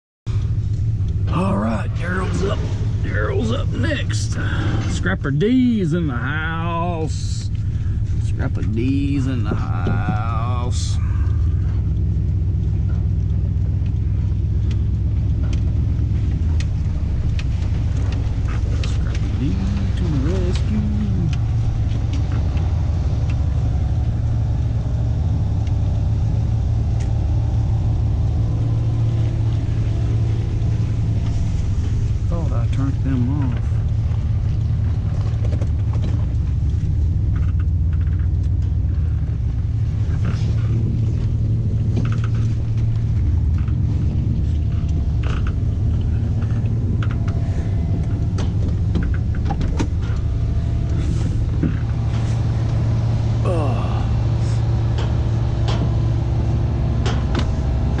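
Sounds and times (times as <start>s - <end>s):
engine humming steadily: 0.3s - 58.0s.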